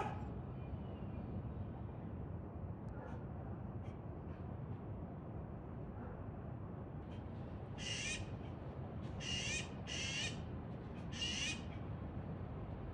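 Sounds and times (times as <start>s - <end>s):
magpie harsh calls: 7.8s - 8.2s, 9.2s - 10.4s, 11.1s - 11.7s.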